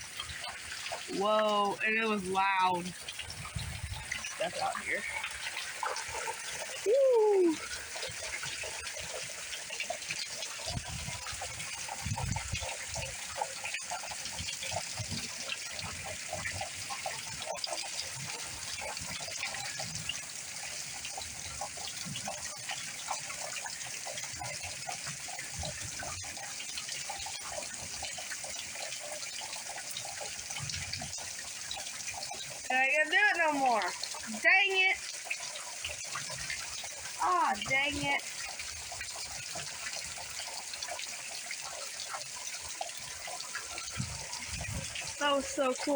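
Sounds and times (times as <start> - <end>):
heavy rain pouring: 0.0 - 8.0, 43.2 - 45.9.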